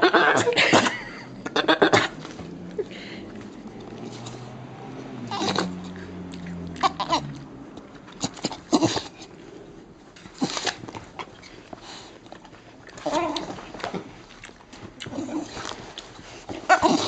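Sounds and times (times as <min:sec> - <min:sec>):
dog grumbling moan: 0:13.0 - 0:13.6.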